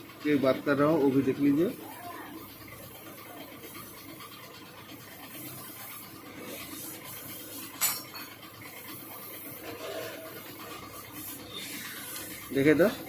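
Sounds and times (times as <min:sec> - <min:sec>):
faint scraping and rubbing: 0:09.6 - 0:10.4.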